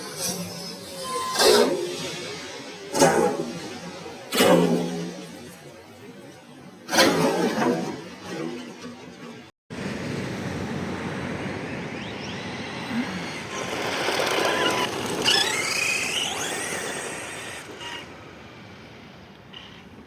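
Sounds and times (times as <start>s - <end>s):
tyre noise: 12.9s - 18.1s
toy truck motor whining: 13.1s - 18.1s.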